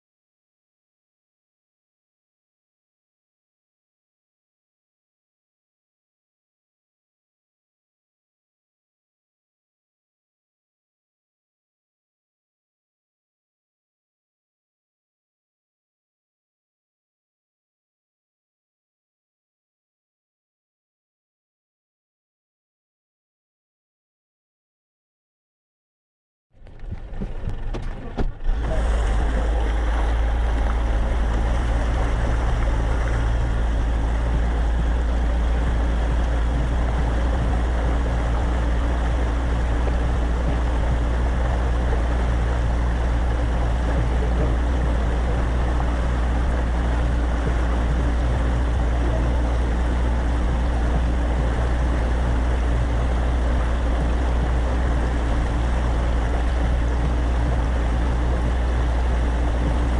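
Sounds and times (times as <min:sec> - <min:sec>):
boat motor running: 0:26.6 - 0:59.9
water wash: 0:26.6 - 0:59.9
wind noise: 0:26.6 - 0:59.9.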